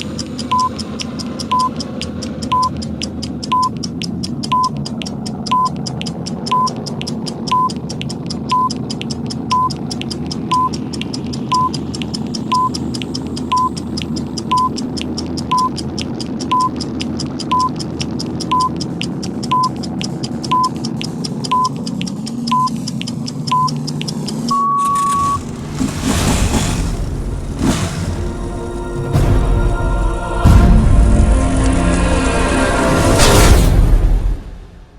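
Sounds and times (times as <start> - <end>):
fast clock ticking: 0.0 - 27.0
steady engine drone: 0.0 - 34.0
short electronic beeps: 0.1 - 3.8, 4.4 - 7.8, 8.5 - 13.8, 14.4 - 14.8, 15.5 - 15.8, 16.4 - 16.8, 17.4 - 17.8, 18.4 - 18.8, 19.4 - 20.8, 21.5 - 21.8, 22.5 - 22.8, 23.5 - 23.8, 24.5 - 25.5.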